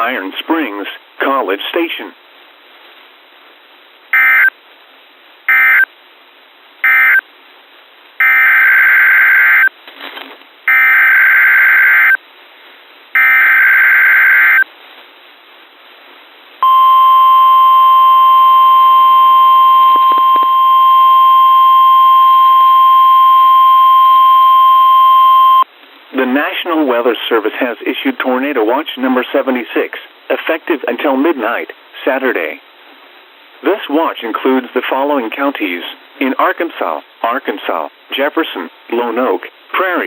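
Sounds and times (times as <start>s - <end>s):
digital data tone bursts: 4.2s - 4.5s, 5.5s - 5.9s
steady warning alarm tone: 4.2s - 4.5s, 5.5s - 5.9s, 6.8s - 7.2s, 16.6s - 25.6s.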